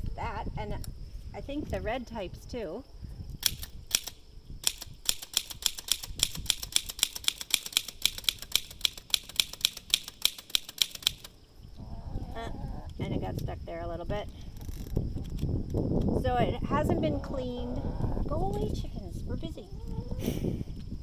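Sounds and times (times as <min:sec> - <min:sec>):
typewriter keys striking: 0:03.4 - 0:11.3.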